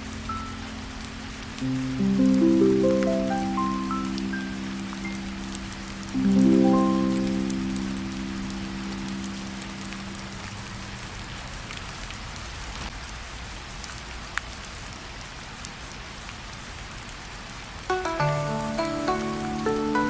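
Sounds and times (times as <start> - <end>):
soft held music notes: 0.0 - 11.3, 17.9 - 20.0
steady rain hiss: 0.0 - 20.0.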